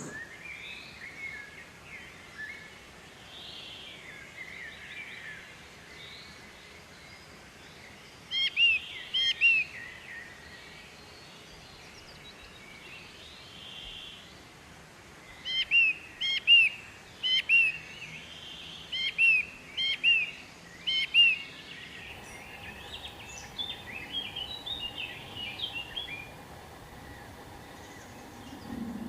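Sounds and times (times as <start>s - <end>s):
bird twittering chirps: 20.9s - 29.0s
bird two-note call: 22.0s - 29.0s.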